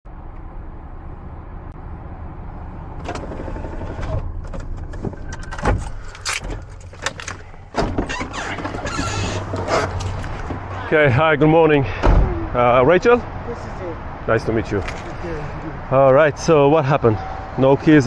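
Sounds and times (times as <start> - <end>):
car engine humming: 4.3 - 11.0
sharp clicks and knocks: 4.5 - 10.7.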